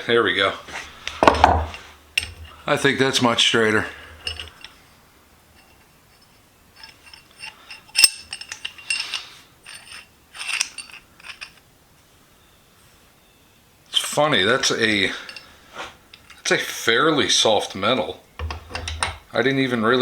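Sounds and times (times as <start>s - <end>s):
steel parts clinking and rattling: 1.1s - 4.8s, 5.5s - 11.7s, 14.9s - 16.6s, 18.4s - 19.3s.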